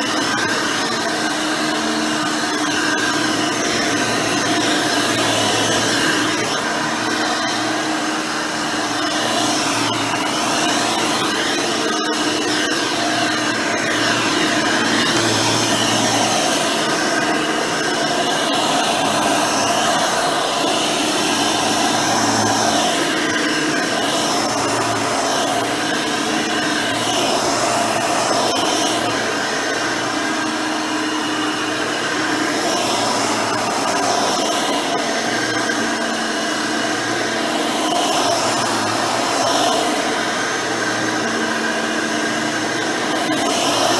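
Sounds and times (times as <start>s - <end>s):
upright vacuum cleaner running: 0.0s - 43.9s.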